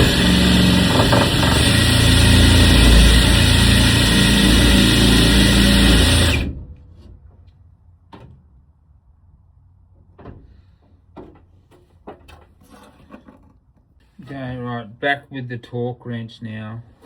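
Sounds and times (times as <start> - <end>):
power drill driving screw into metal: 0.0 - 6.6.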